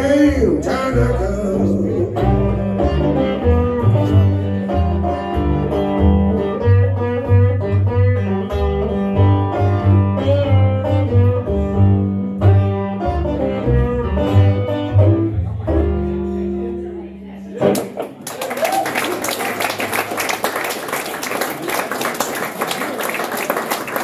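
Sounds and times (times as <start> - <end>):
pulsing bass notes: 0.0 - 17.0
acoustic blues guitars: 0.0 - 18.2.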